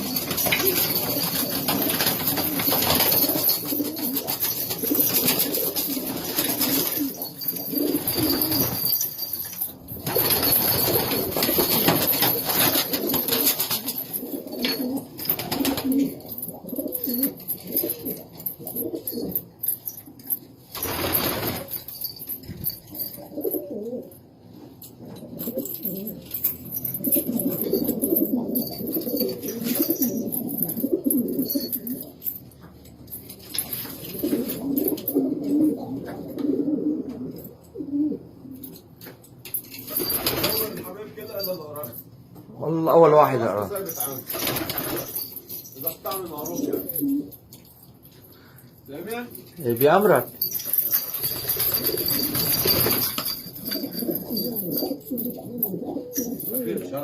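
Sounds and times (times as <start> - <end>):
pigeons cooing: 0.0 - 9.0, 10.1 - 19.4, 25.0 - 32.4, 34.0 - 38.8, 51.5 - 56.7.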